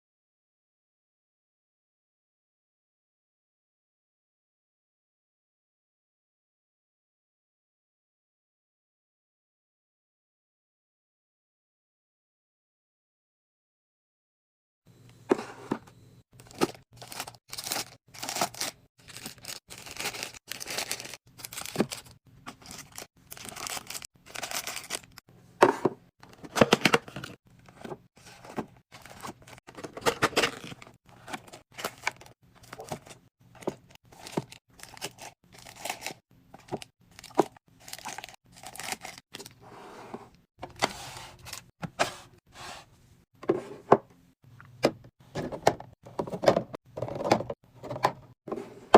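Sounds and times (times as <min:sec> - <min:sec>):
items clicking and clattering: 0:15.3 - 0:39.5, 0:44.6 - 0:48.9
packaging crinkling and tearing: 0:16.4 - 0:25.2, 0:28.9 - 0:39.5.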